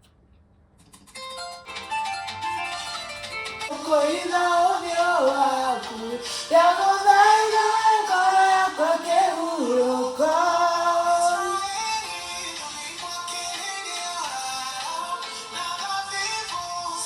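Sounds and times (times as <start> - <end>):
musical backing: 1.0 - 9.2
person singing: 3.7 - 17.0.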